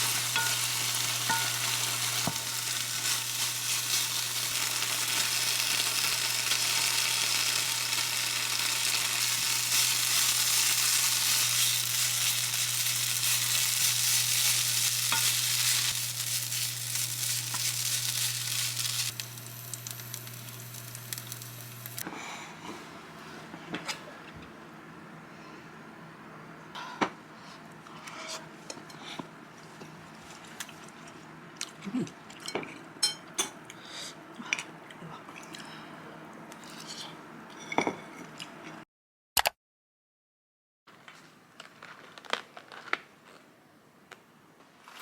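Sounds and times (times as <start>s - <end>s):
food sizzling in a pan: 0.0s - 22.0s.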